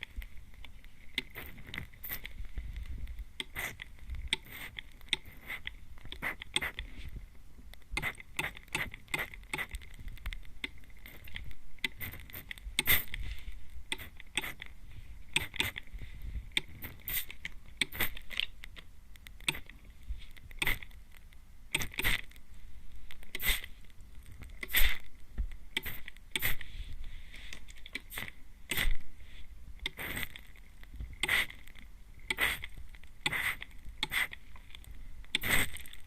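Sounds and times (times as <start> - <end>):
spray bottle squirts: 23.4 - 23.7, 25.8 - 26.6, 28.0 - 29.0, 29.9 - 30.3, 31.2 - 31.5, 32.3 - 32.6, 33.3 - 34.4, 35.4 - 35.8.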